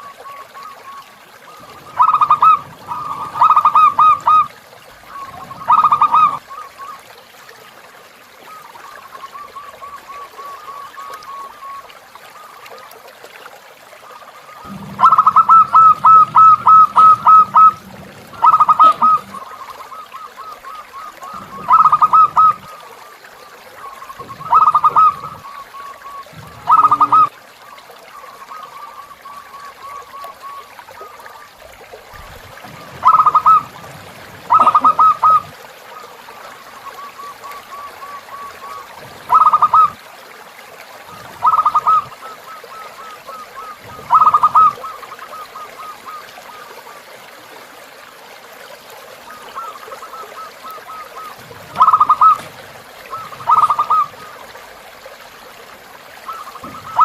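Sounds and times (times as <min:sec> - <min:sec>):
dove cooing: 0:00.0 - 0:07.0, 0:14.6 - 0:22.9, 0:23.8 - 0:27.3, 0:32.7 - 0:35.6, 0:36.8 - 0:40.0, 0:41.1 - 0:46.6, 0:49.5 - 0:54.4, 0:56.3 - 0:57.0
river trickling: 0:00.0 - 0:57.0.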